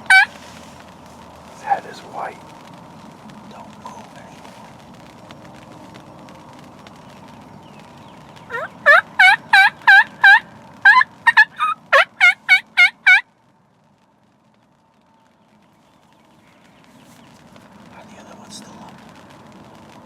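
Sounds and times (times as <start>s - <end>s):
wild turkey yelping: 0.0s - 0.6s, 8.5s - 13.2s.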